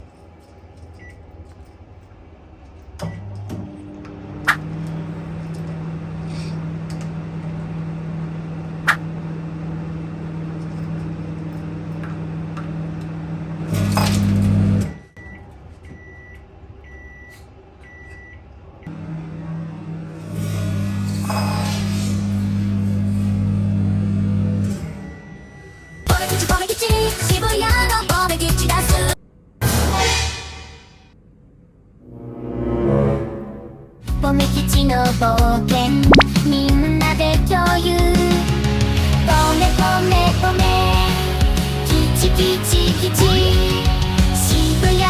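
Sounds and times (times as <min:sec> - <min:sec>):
microwave oven humming: 0:03.0 - 0:10.5, 0:11.2 - 0:15.5, 0:22.2 - 0:26.0
microwave beeps: 0:15.2 - 0:18.4, 0:25.0 - 0:26.1.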